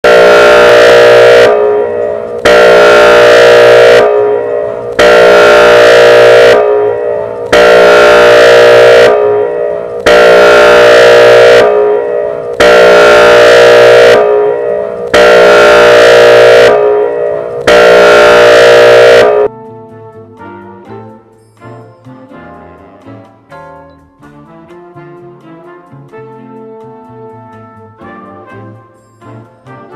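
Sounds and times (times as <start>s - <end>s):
siren air horn blasts: 0.0s - 19.5s.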